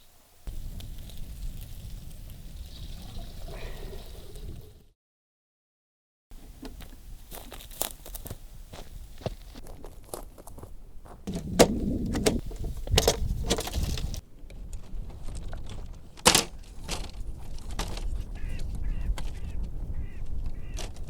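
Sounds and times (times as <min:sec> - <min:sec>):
rustling and clattering: 0:11.2 - 0:19.4
handling clicks and knocks: 0:11.3 - 0:14.2, 0:15.6 - 0:18.1
geese honking: 0:18.3 - 0:21.0.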